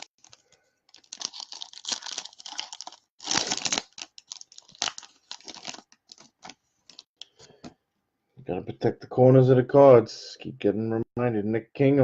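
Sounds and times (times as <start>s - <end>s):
foil wrapper tearing and crinkling: 0.0s - 7.1s.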